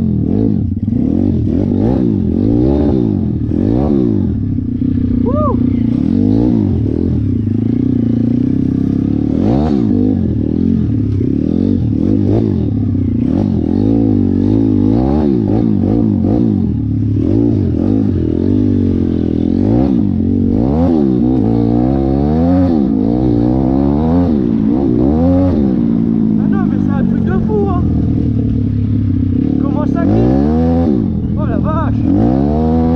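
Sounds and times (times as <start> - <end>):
dirt bike engine revving: 0.0 - 32.9.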